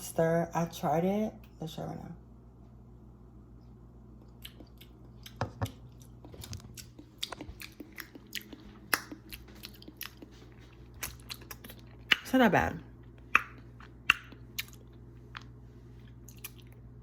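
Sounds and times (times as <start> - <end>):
person chewing food: 3.6 - 12.3, 12.9 - 17.0
mouth clicks and smacks: 13.3 - 14.8.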